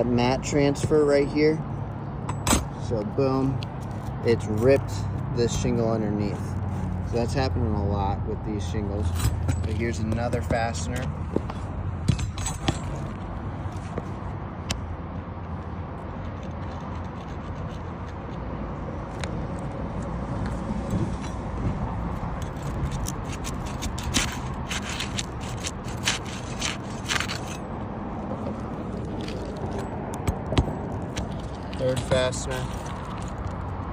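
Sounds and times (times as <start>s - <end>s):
metal tool scraping under shingles: 8.6s - 14.0s, 22.2s - 27.8s, 28.6s - 33.5s.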